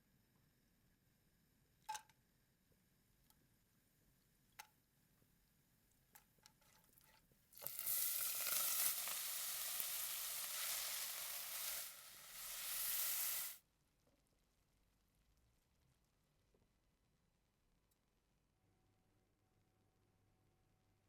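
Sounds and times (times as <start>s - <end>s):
food sizzling in hot oil: 7.6s - 13.6s.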